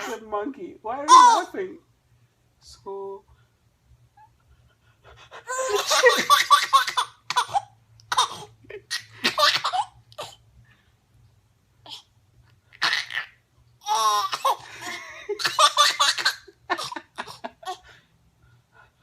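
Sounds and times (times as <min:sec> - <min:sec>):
baby laughing: 0:01.1 - 0:01.5, 0:05.4 - 0:10.4, 0:12.7 - 0:17.8.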